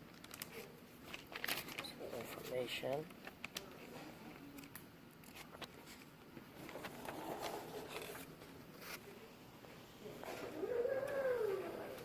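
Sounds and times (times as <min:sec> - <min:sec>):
faint murmur: 0:06.6 - 0:12.0.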